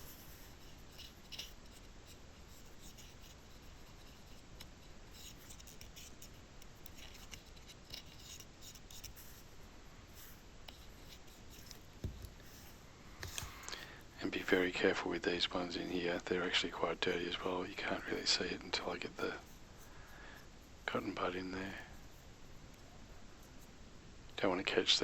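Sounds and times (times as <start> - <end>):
cotton bud scratching contacts: 0.0 - 23.8
soft knock: 12.0 - 12.3.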